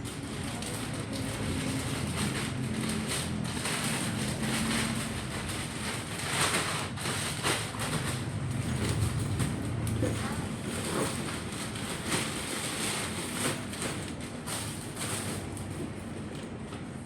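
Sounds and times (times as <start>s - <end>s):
road and wind noise: 0.0s - 17.0s
vehicle engine droning: 0.6s - 12.4s.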